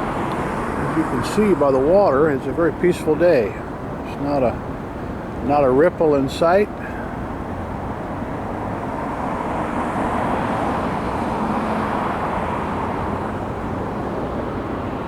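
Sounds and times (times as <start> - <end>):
distant traffic rushing: 0.0 - 15.0.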